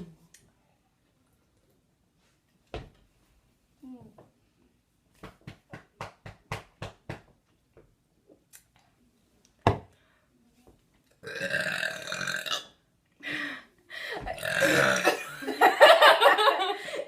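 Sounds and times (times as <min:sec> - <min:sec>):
woman burping: 0:11.2 - 0:12.7, 0:14.2 - 0:15.4.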